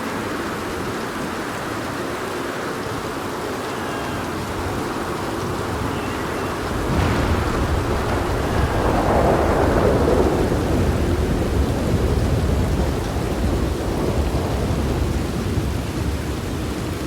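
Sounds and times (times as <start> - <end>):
steady rain: 0.0 - 17.0
thunder rumbling: 4.3 - 17.0.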